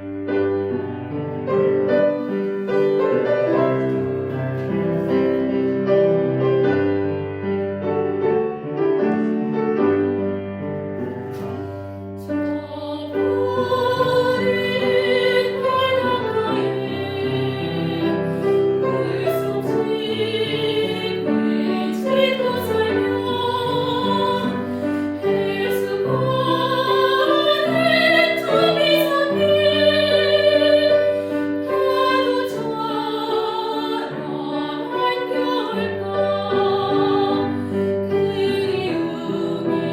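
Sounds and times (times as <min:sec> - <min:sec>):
piano: 0:00.0 - 0:39.9
person singing with vibrato: 0:12.3 - 0:39.9.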